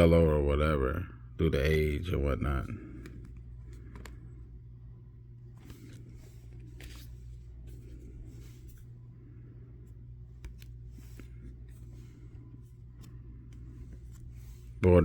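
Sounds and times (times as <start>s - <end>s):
low electrical hum: 0.0s - 15.0s
trading cards sliding and clicking: 2.8s - 4.6s, 5.4s - 14.9s.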